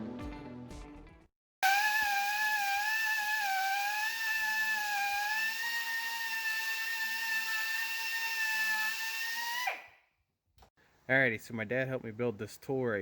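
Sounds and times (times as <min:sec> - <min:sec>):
power tool motor whining: 0:01.6 - 0:09.9.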